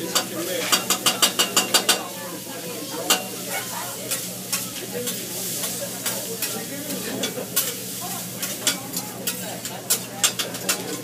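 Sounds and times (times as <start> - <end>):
food sizzling on a griddle: 0.0 - 11.0
metal spatulas clicking and scraping: 8.4 - 11.0.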